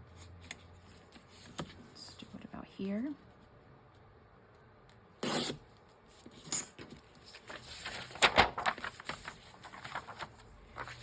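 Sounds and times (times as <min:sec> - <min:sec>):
paper rustling and crackling: 0:06.2 - 0:11.0.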